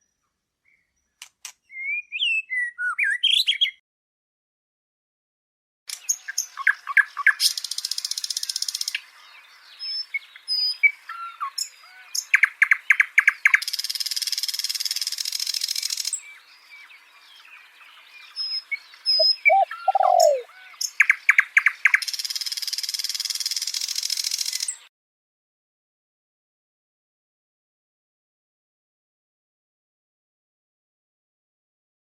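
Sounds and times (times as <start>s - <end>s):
songbirds singing: 0.0s - 3.8s, 5.9s - 24.9s.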